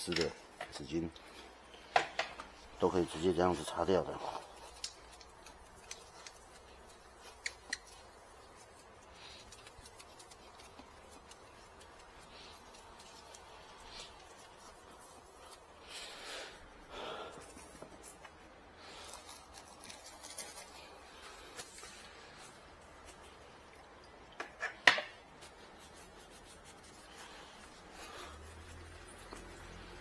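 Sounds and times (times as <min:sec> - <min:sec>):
tissue rubbing a surface: 0:04.4 - 0:16.8, 0:25.4 - 0:30.0.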